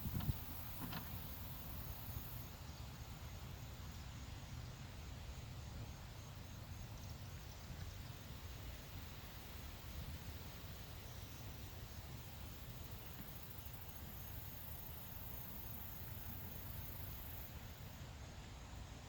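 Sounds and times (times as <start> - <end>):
light hiss: 0.0 - 19.0.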